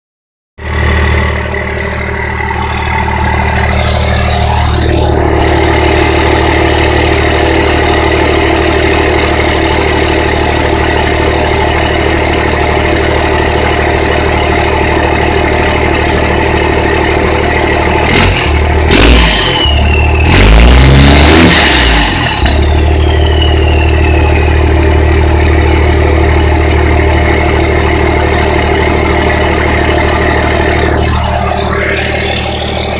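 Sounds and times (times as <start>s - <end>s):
diesel engine idling: 0.6s - 32.9s
engine revving: 0.6s - 32.9s
turbo whistle: 19.0s - 25.2s.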